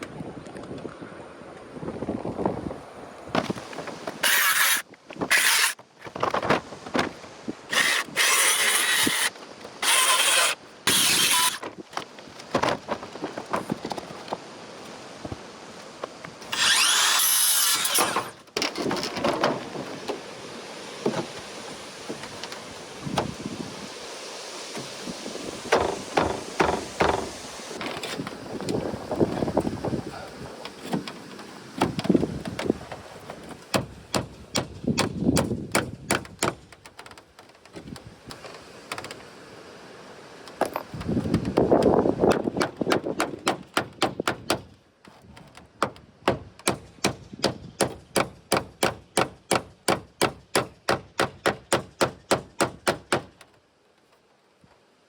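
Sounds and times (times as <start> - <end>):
power tool bursts: 7.7 - 11.6, 16.5 - 18.4.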